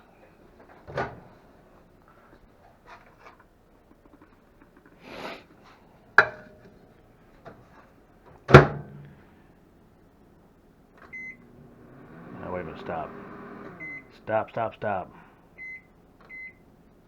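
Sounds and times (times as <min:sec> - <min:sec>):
microwave door shutting with thud: 0:00.9 - 0:01.3, 0:08.5 - 0:09.1.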